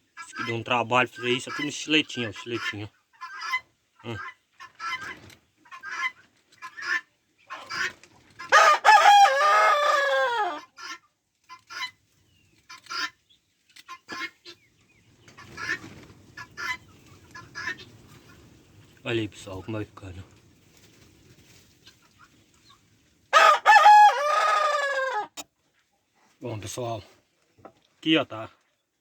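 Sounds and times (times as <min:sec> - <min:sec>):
rooster crowing: 0:08.5 - 0:10.6, 0:23.4 - 0:25.4.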